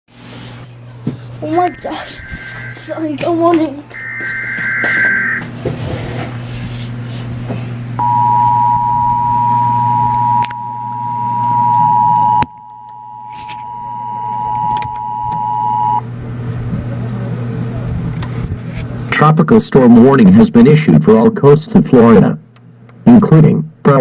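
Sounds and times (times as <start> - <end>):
low hum: 0.6 - 18.6
buzzy data burst: 1.4 - 3.2, 3.9 - 5.4
two-tone alert beep: 1.6 - 3.1, 4.0 - 5.4.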